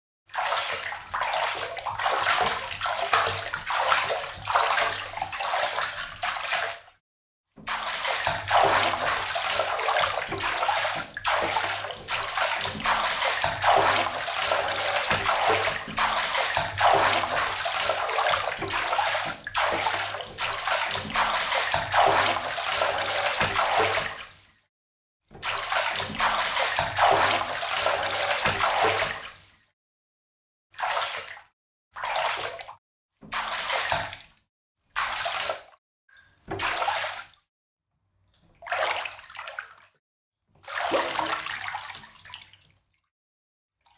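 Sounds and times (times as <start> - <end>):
footsteps splashing through water: 0.4 - 6.8, 7.7 - 24.2, 25.4 - 29.3.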